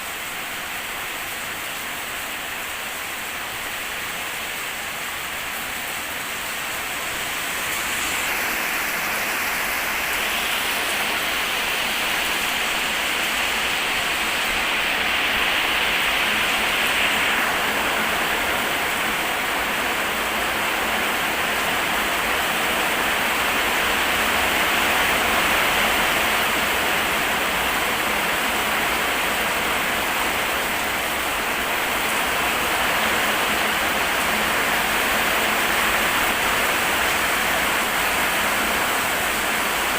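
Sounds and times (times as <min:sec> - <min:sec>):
rain pouring down: 0:00.0 - 0:39.9.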